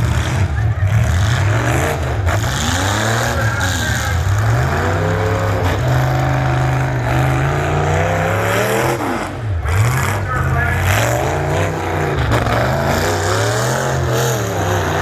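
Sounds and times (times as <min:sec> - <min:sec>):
truck engines revving: 0:00.0 - 0:15.0.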